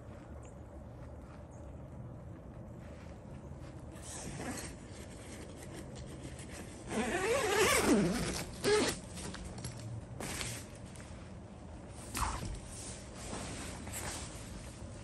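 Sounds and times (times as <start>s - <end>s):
tent zipper being pulled: 6.6s - 9.1s.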